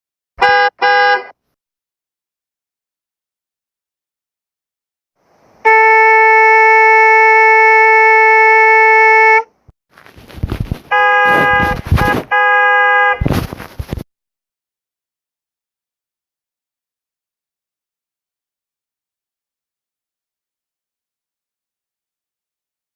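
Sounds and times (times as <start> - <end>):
car horn blast: 0.4 - 1.4, 5.6 - 9.5, 10.9 - 13.3.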